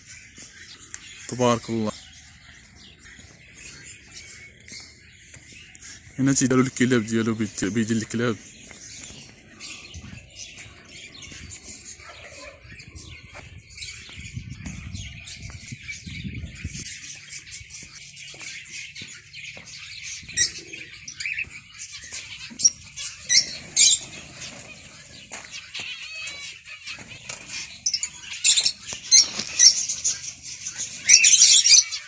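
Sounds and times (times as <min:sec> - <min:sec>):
sharp bird calls: 0:00.0 - 0:32.0
small birds twittering: 0:00.0 - 0:32.0
wings fluttering: 0:22.1 - 0:31.4.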